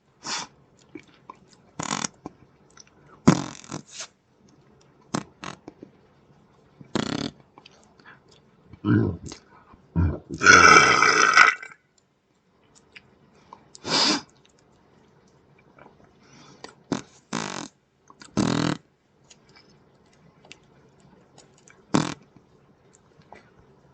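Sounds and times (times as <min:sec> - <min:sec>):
fart noises: 0:01.8 - 0:02.2, 0:03.2 - 0:04.1, 0:05.1 - 0:05.7, 0:06.9 - 0:07.4, 0:10.0 - 0:11.8, 0:16.9 - 0:18.9, 0:21.9 - 0:22.3.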